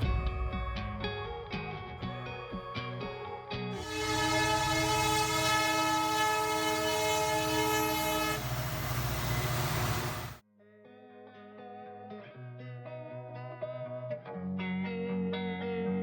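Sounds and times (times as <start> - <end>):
moving train rumble: 3.8 - 10.4
train horn: 3.8 - 10.4.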